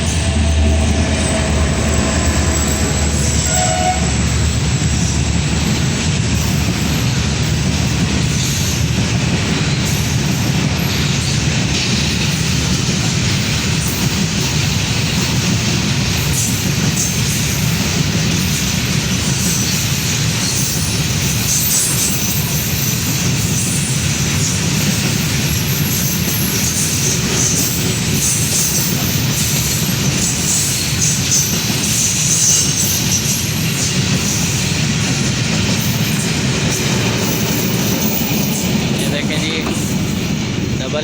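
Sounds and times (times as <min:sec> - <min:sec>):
wheel squeal: 0:00.0 - 0:05.2
train wheels rumbling on rails: 0:00.0 - 0:41.0.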